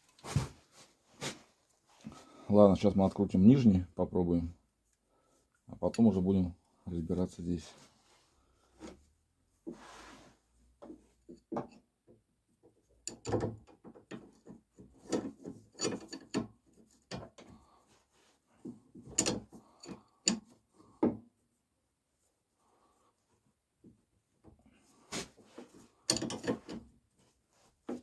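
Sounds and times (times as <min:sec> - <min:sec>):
metal tool clicks and knocks: 0:13.0 - 0:17.5, 0:19.1 - 0:20.5, 0:26.1 - 0:26.8.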